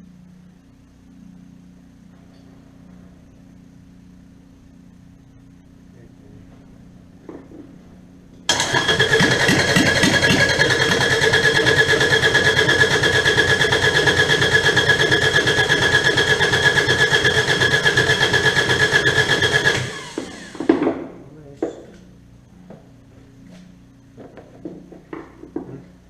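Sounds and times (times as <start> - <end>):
diesel engine cranking: 8.5 - 20.7.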